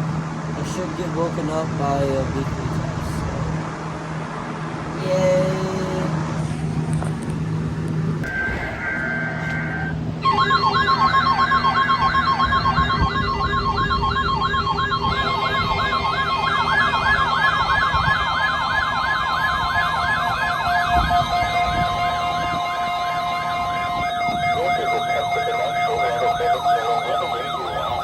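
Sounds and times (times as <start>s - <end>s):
electronic data screech: 8.2s - 16.4s, 20.9s - 28.0s
steady alert tone: 8.2s - 17.9s, 19.9s - 28.0s
warbling siren: 8.2s - 28.0s.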